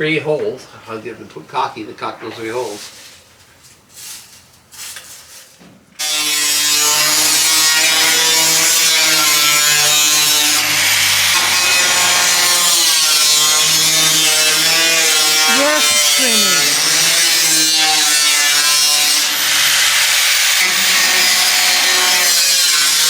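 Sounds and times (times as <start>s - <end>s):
power tool cutting sheet metal: 6.0s - 15.0s, 17.4s - 23.0s.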